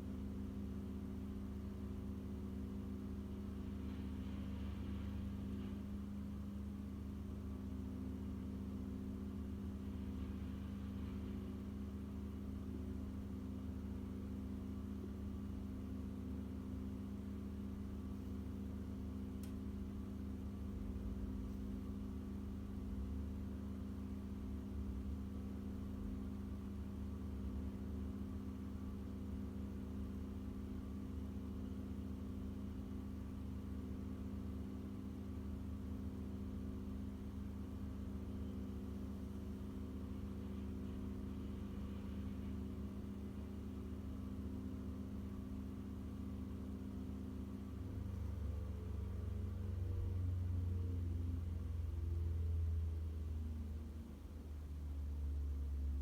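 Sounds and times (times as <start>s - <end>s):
faint click: 19.4s - 19.6s.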